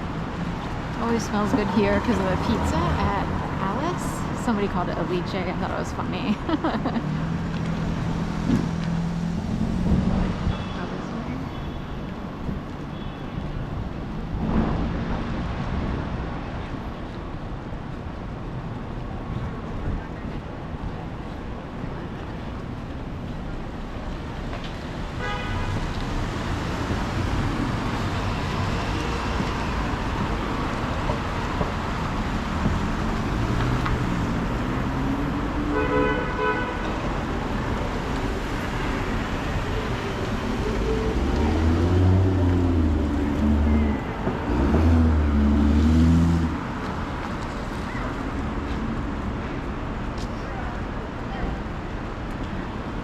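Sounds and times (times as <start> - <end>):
city street traffic: 0.0 - 53.0
car horn toots: 25.2 - 25.8, 35.7 - 36.8.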